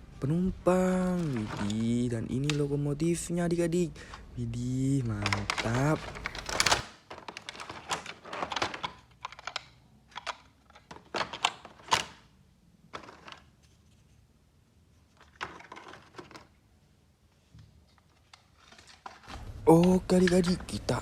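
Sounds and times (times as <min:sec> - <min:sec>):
plastic toy parts clicking: 0:01.0 - 0:02.8, 0:05.1 - 0:12.2, 0:12.9 - 0:13.6.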